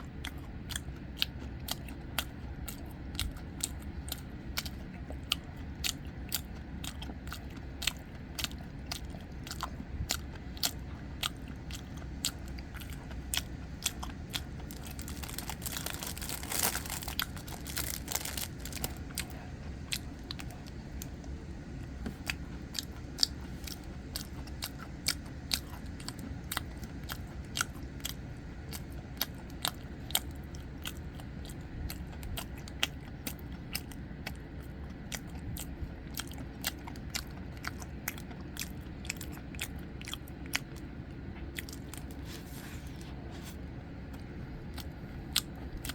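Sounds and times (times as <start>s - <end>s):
chewing and biting bread: 0.0s - 45.9s.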